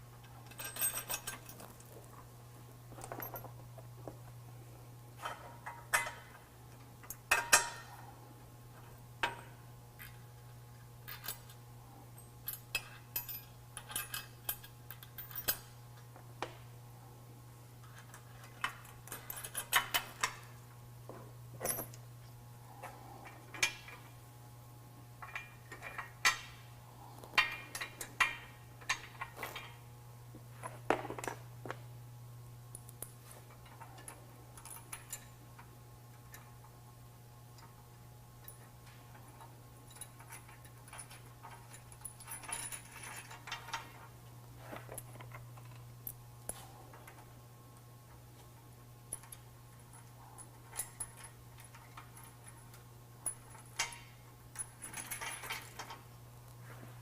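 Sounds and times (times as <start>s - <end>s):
steady low hum: 0.0s - 57.0s
metallic clinks of bolts and tools: 0.2s - 2.2s, 3.0s - 3.8s, 5.2s - 7.9s, 9.2s - 11.6s, 12.2s - 16.1s, 17.8s - 20.5s, 21.6s - 22.2s, 38.4s - 44.0s, 49.1s - 56.1s.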